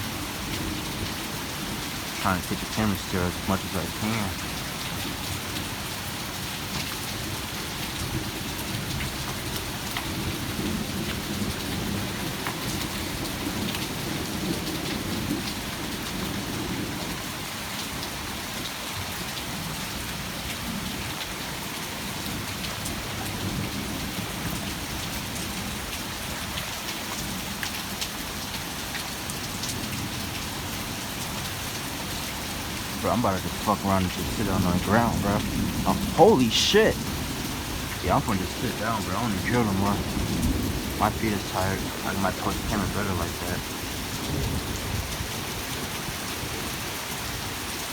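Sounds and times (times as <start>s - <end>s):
heavy rain pouring: 0.0s - 47.9s.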